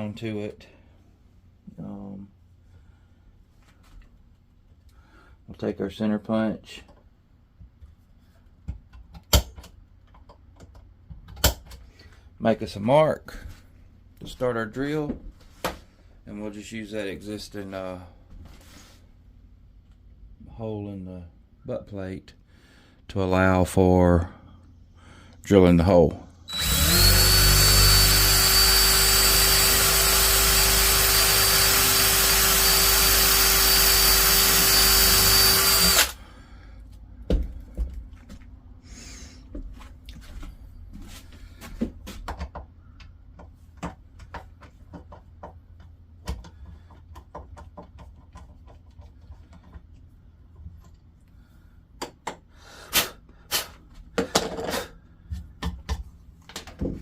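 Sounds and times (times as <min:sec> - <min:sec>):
electric drill boring into wood: 0:26.5 - 0:36.2.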